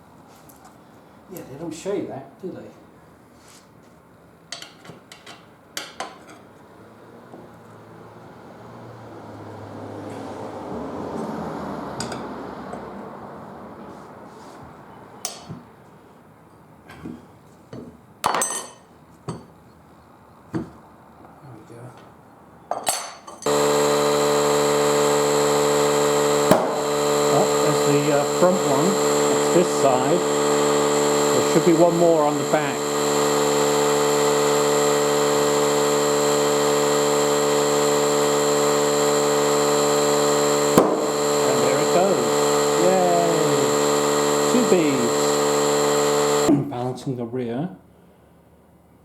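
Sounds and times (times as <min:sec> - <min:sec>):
air compressor humming and hissing: 0:23.5 - 0:46.8.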